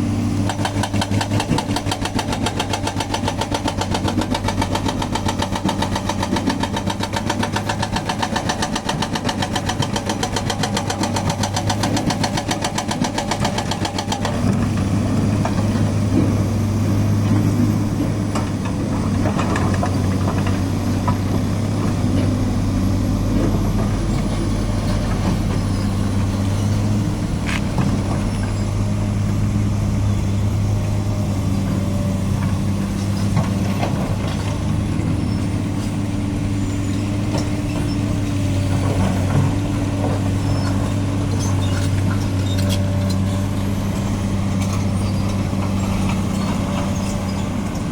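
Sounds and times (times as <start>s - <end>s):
diesel engine running: 0.0s - 47.9s
hydraulic breaker pounding concrete: 0.4s - 22.6s.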